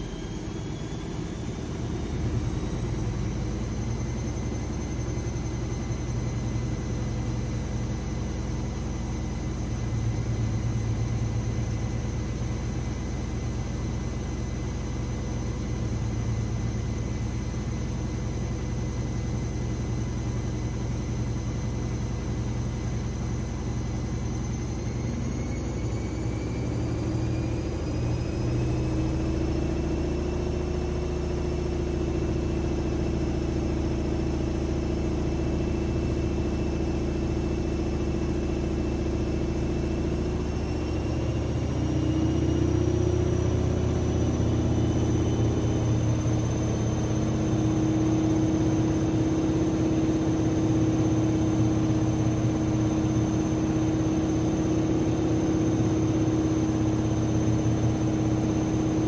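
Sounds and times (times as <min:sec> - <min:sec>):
washing machine hum: 0:00.0 - 0:59.0
motor whine rising in pitch: 0:19.3 - 0:59.0.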